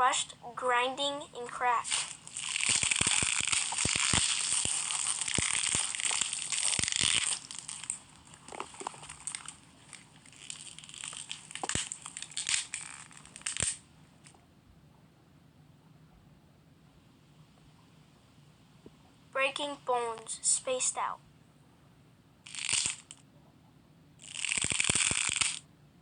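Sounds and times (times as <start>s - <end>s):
vegetables crunching and cracking: 1.9s - 13.8s, 24.2s - 25.6s.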